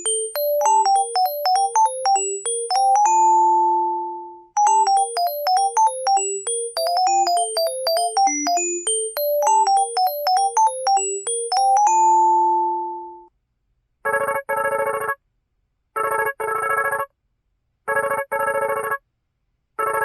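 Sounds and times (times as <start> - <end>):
mobile phone ringtone: 0.0 - 13.3, 19.8 - 20.0.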